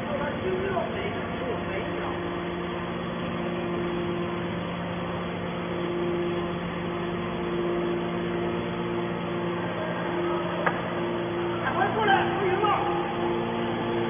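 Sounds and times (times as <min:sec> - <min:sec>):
higher hum tone: 0:00.0 - 0:14.0
hydraulic power unit humming: 0:00.0 - 0:14.0.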